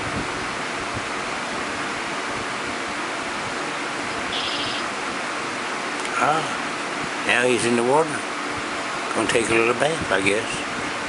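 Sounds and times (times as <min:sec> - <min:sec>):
small bird chirping: 0:04.3 - 0:04.9.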